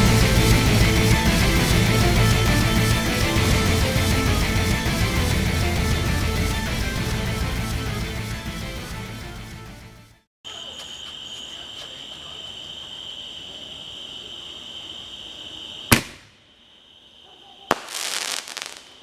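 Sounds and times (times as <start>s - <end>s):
insect chirring: 10.5s - 19.0s
sharp crack: 15.9s - 16.4s.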